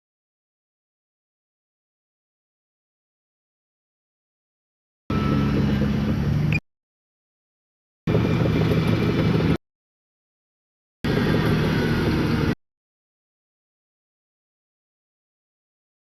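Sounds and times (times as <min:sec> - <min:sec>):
heavy diesel engine running: 0:05.1 - 0:06.6, 0:08.1 - 0:09.6, 0:11.1 - 0:12.6.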